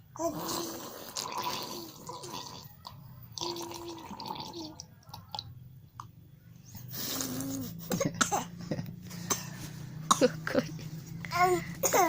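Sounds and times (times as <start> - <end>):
child coughing and sputtering: 7.3 - 8.6, 9.2 - 10.6, 11.4 - 12.0.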